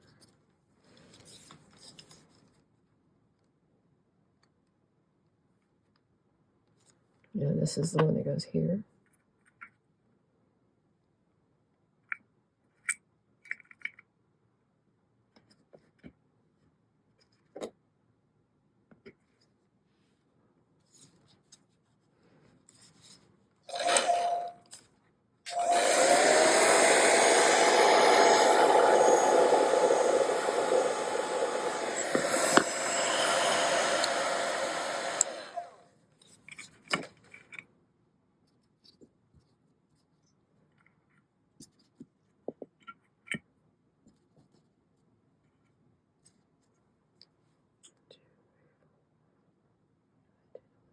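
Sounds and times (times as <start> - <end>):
hot-air blower running: 23.7 - 24.4, 25.5 - 35.8.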